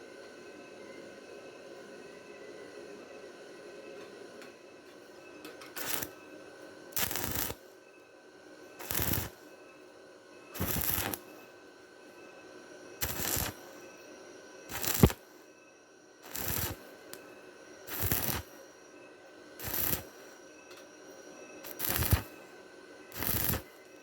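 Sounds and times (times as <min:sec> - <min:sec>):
welding arc crackling: 0:05.8 - 0:06.1, 0:07.0 - 0:07.6, 0:08.8 - 0:09.3, 0:10.6 - 0:11.2, 0:13.0 - 0:13.6, 0:14.7 - 0:15.2, 0:16.2 - 0:16.8, 0:17.9 - 0:18.5, 0:19.6 - 0:20.1, 0:21.6 - 0:22.3, 0:23.1 - 0:23.8.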